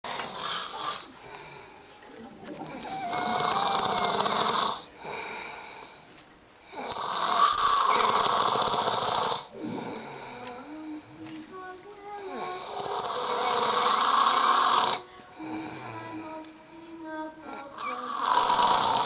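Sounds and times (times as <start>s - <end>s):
man snoring: 0.0s - 1.1s, 2.7s - 5.6s, 6.7s - 10.4s, 12.3s - 16.2s, 17.7s - 19.0s
quiet breathing: 0.1s - 7.3s, 9.4s - 19.0s.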